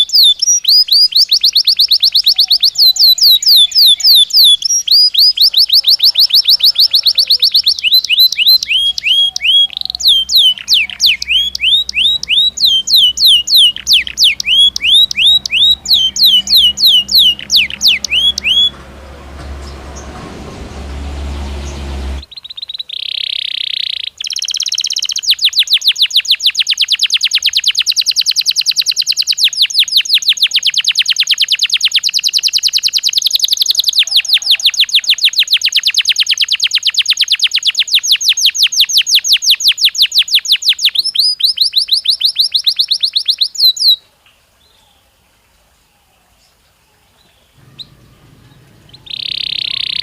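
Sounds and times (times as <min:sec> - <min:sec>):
canary singing trills: 0:00.0 - 0:20.2, 0:21.2 - 0:44.0, 0:47.2 - 0:50.0
low hum: 0:11.9 - 0:22.3, 0:47.6 - 0:50.0.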